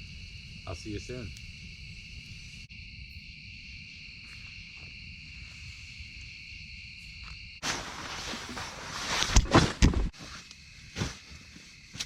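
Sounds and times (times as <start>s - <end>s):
insects chirring: 0.0s - 12.0s
sudden loud rustle: 7.6s - 12.0s.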